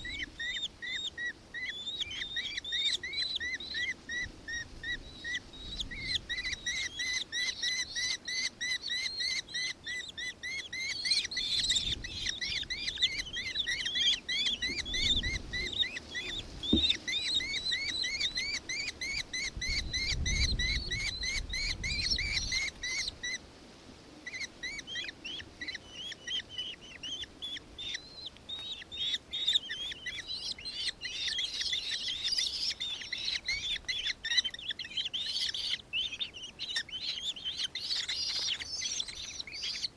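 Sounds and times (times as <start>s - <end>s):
kestrel chattering call: 24.3s - 39.9s.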